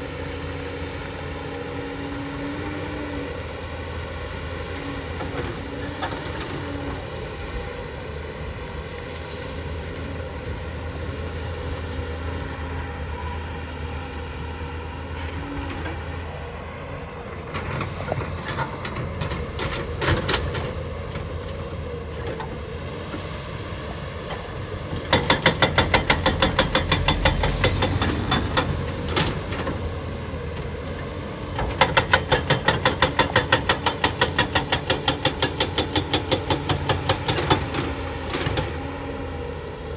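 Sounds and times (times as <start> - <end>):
excavator diesel engine running: 23.8 - 35.2.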